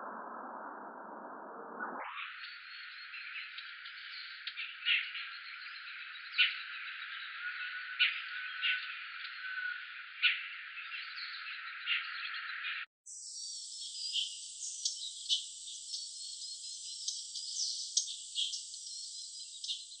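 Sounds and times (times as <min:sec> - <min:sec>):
birds chirping: 0:02.0 - 0:20.0
insects buzzing: 0:13.1 - 0:20.0.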